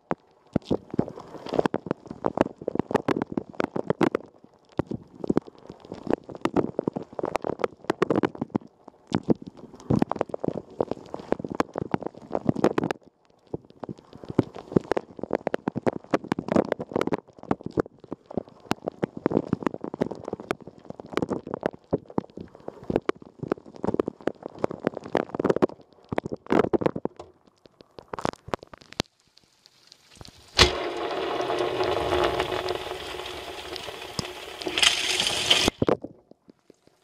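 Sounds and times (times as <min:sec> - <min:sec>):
dishwasher water splashing: 0:30.6 - 0:35.8
steady rushing spray: 0:30.6 - 0:35.8.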